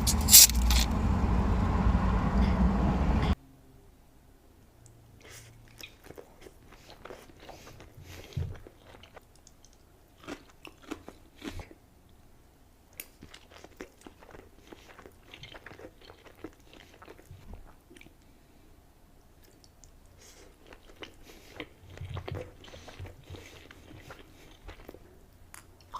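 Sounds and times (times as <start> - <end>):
person biting and chewing: 0.0 - 0.9, 5.2 - 11.8, 13.0 - 18.1, 20.2 - 25.0
low bump: 0.0 - 3.4.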